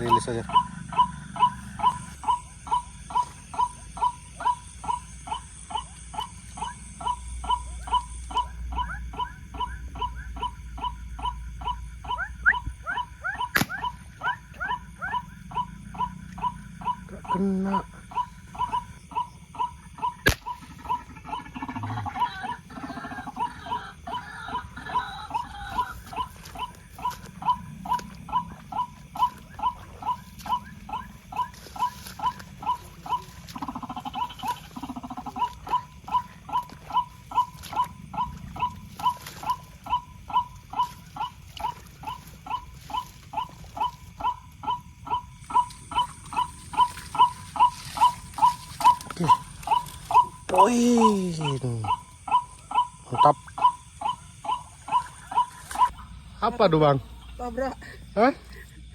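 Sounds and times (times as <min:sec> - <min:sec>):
sharp crack: 0:20.2 - 0:20.5.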